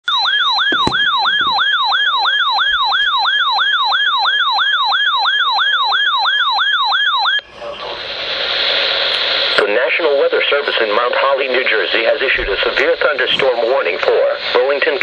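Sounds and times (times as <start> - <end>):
electronic alarm siren wailing: 0.0 - 7.5.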